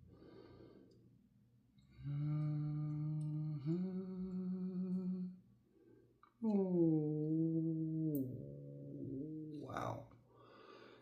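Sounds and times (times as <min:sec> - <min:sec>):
man humming: 0:02.0 - 0:05.4, 0:06.4 - 0:10.1.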